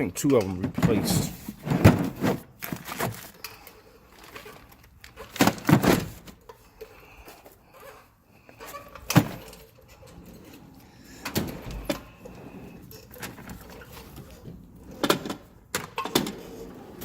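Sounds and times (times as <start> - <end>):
tools clunking and knocking: 0.0 - 3.7, 8.6 - 17.0.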